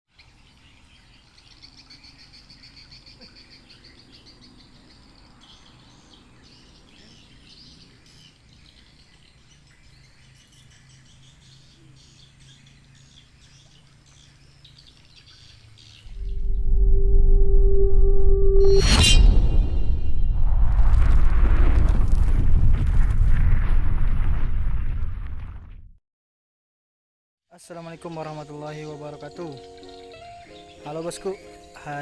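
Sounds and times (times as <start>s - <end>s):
birds chirping: 0.1s - 16.6s, 27.6s - 32.0s
steady low hum: 16.1s - 20.7s.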